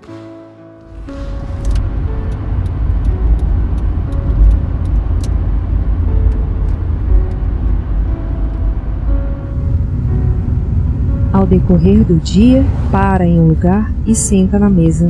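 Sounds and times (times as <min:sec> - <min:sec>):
faint music notes: 0:00.0 - 0:15.0
loud low rumble: 0:00.0 - 0:15.0.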